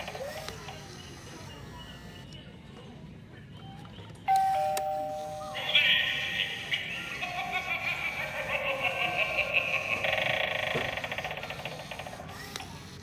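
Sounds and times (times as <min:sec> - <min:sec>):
spooky electronic sound effect: 0:05.2 - 0:12.0.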